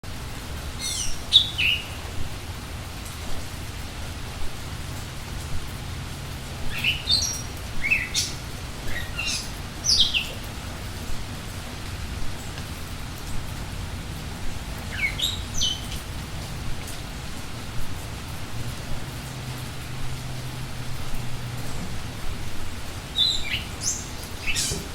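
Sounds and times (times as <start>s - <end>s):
steady rain: 0.0s - 24.9s
birds chirping and whistling: 0.8s - 2.0s, 6.7s - 10.4s, 14.9s - 16.0s, 23.1s - 24.9s.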